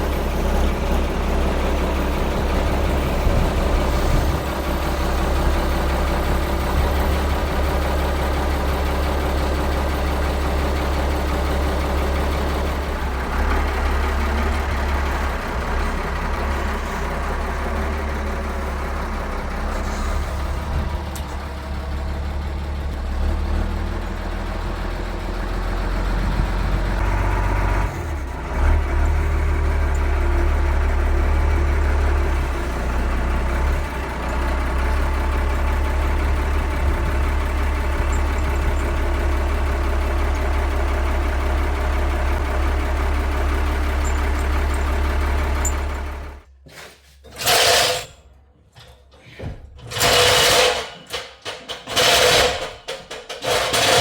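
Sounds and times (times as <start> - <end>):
heavy machine engine droning: 0.0 - 46.5.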